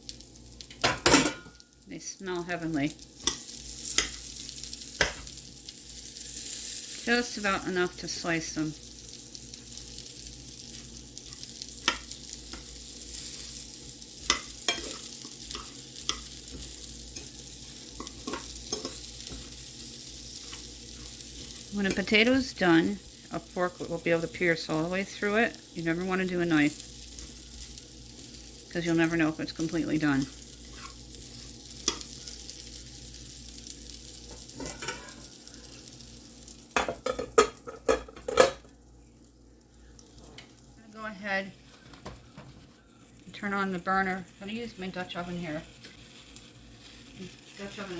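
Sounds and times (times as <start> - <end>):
potatoes sizzling in oil: 0.0 - 47.9
utensil clattering against pan: 36.8 - 38.7.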